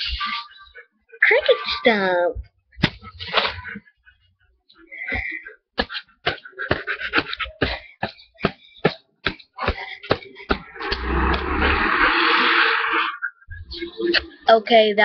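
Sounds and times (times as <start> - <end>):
loud rough noise: 10.6 - 13.2.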